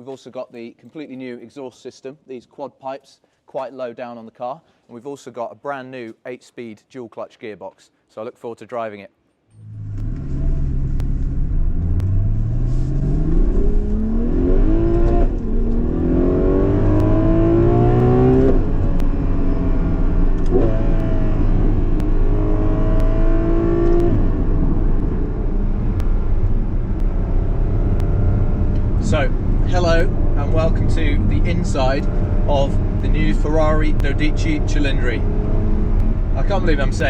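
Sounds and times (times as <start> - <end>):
car engine accelerating hard: 9.6 - 37.0.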